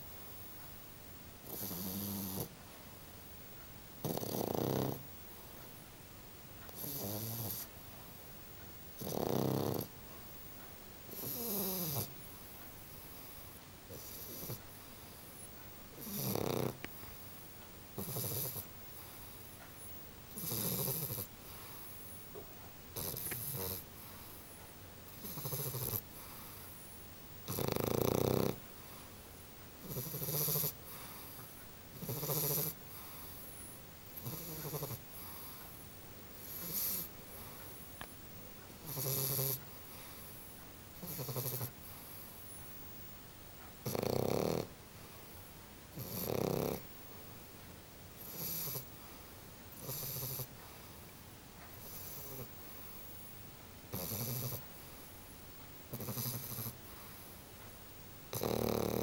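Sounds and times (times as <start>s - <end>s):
puppy snoring: 1.4s - 2.6s, 4.0s - 5.1s, 6.7s - 7.8s, 9.0s - 10.0s, 11.1s - 17.2s, 17.9s - 24.4s, 25.1s - 26.8s, 27.4s - 29.1s, 29.8s - 35.8s, 36.4s - 37.8s, 38.7s - 40.4s, 41.0s - 42.6s, 43.8s - 47.0s, 48.2s - 51.0s, 51.6s - 53.3s, 53.9s - 55.1s, 55.9s - 57.3s, 58.3s - 59.0s.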